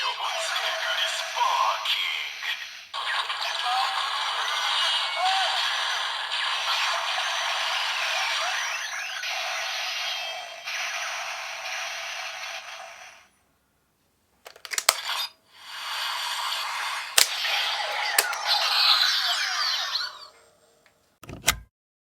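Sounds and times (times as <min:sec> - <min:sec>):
hissing crackling toy speaker: 0:00.2 - 0:13.3, 0:14.5 - 0:20.2
sharp plastic clicks: 0:14.4 - 0:15.2, 0:17.1 - 0:18.4.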